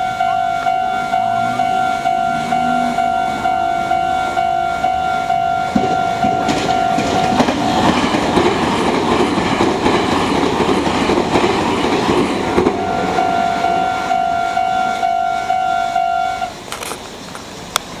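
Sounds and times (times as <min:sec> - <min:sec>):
level crossing alarm ringing: 0:00.0 - 0:08.5, 0:11.6 - 0:16.6
train wheels clattering on rail joints: 0:01.0 - 0:18.0.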